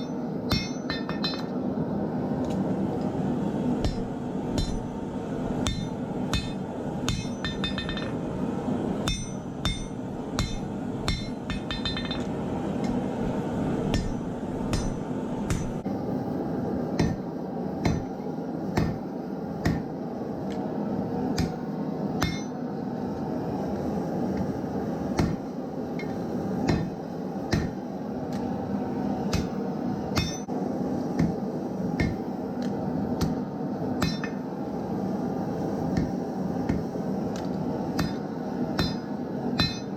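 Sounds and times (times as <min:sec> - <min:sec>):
hammer striking steel on anvil: 0:00.0 - 0:01.5, 0:03.8 - 0:04.9, 0:05.6 - 0:08.2, 0:09.0 - 0:13.0, 0:13.9 - 0:15.8, 0:17.0 - 0:18.1, 0:18.8 - 0:19.0, 0:19.6 - 0:19.9, 0:21.4 - 0:21.6, 0:22.2 - 0:22.6, 0:25.2 - 0:25.4, 0:26.0 - 0:27.8, 0:29.3 - 0:30.5, 0:32.0 - 0:32.2, 0:34.0 - 0:34.4, 0:38.0 - 0:38.2, 0:38.8 - 0:39.9
steady rushing noise: 0:00.0 - 0:39.9.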